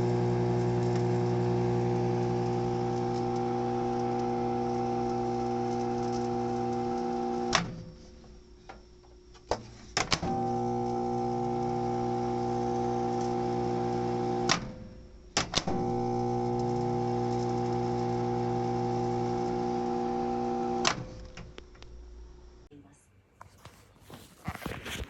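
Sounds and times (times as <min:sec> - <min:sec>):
microwave humming: 0:00.0 - 0:07.8, 0:10.2 - 0:14.8, 0:15.6 - 0:22.7.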